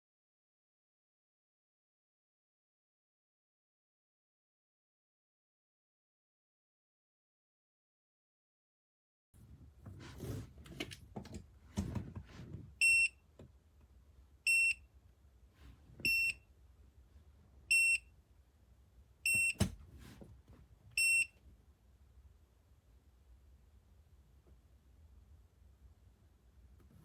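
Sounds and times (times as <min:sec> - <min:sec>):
knocking and rustling handling: 0:09.4 - 0:12.8.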